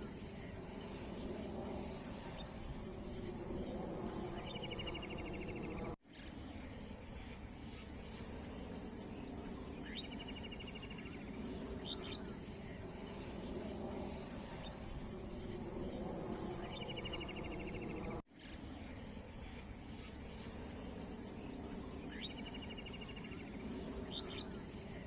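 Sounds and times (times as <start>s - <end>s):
low background rumble: 0.0s - 7.3s, 8.2s - 22.2s
insect chirring: 0.1s - 6.0s, 6.7s - 18.2s.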